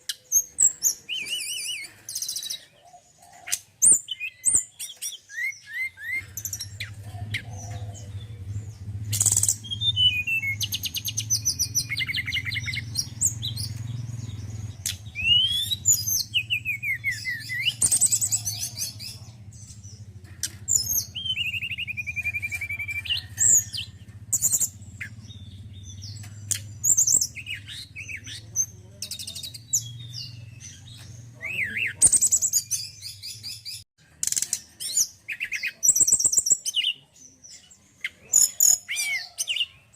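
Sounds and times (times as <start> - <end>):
songbird chirping and trilling: 0.0 - 39.9.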